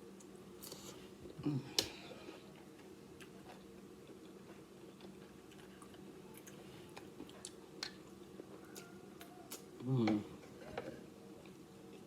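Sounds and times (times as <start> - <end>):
person chewing food: 0.2 - 12.0.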